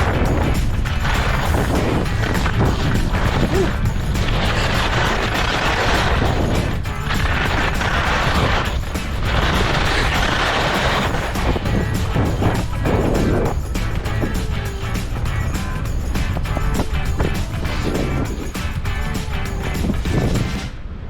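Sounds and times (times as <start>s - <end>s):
snowboard scraping across snow: 0.0s - 14.4s
wind buffeting the microphone: 0.0s - 21.0s.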